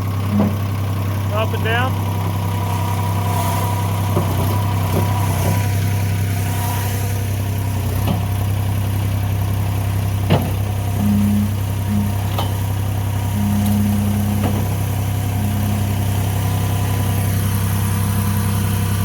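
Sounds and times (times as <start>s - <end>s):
diesel engine idling: 0.0s - 19.0s.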